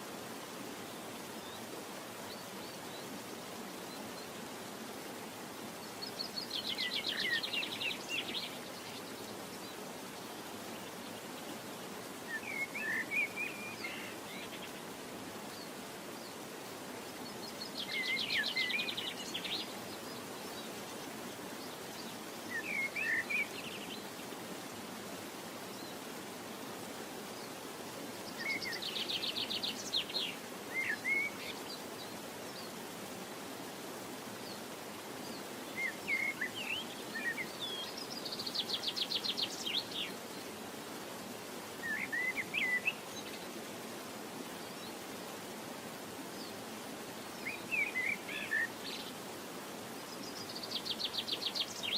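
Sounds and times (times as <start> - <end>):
steady hiss: 0.0 - 51.9.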